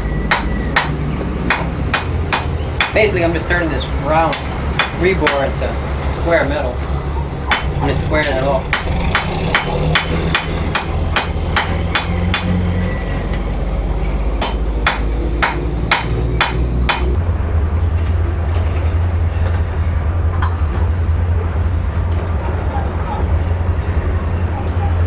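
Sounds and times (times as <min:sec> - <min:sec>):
hammer striking metal on anvil: 0:00.0 - 0:03.0, 0:04.3 - 0:05.5, 0:07.5 - 0:12.6, 0:14.4 - 0:17.2
steady low hum: 0:00.0 - 0:25.0.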